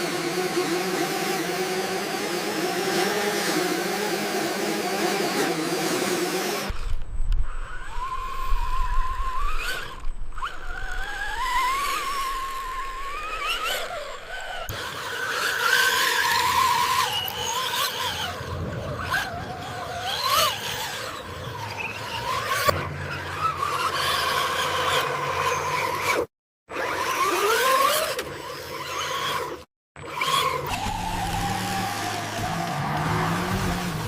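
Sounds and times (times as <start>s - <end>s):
electric drive whining: 0.0s - 18.7s, 30.0s - 34.0s.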